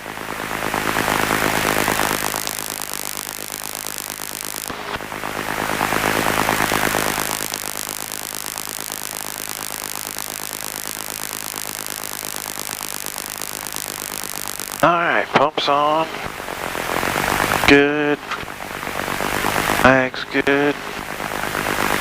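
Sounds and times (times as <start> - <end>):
intercom hiss: 0.9 - 18.5, 19.6 - 21.0
intercom click: 1.7 - 5.0, 6.4 - 15.6.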